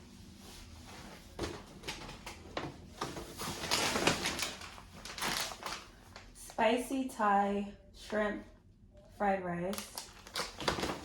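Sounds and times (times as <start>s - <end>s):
grocery packages rustling and knocking: 1.1s - 6.4s, 10.0s - 11.0s.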